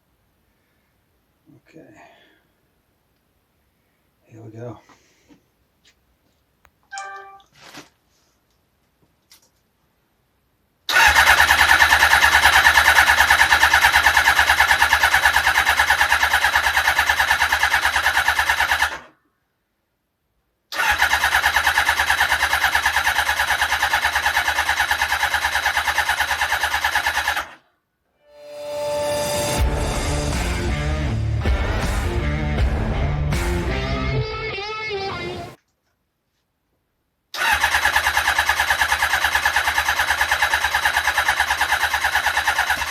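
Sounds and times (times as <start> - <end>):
electric starter cranking engine: 10.9 - 19.1, 20.7 - 27.6, 37.4 - 42.9.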